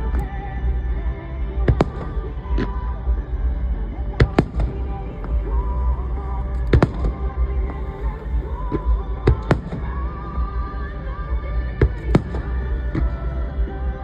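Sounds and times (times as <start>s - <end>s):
music: 0.0s - 14.0s
fireworks bursting: 11.8s - 13.5s.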